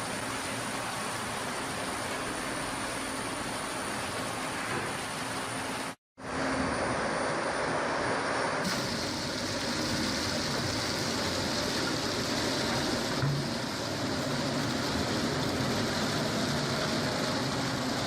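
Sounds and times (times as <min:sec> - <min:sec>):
sawmill machinery running: 0:06.5 - 0:18.0.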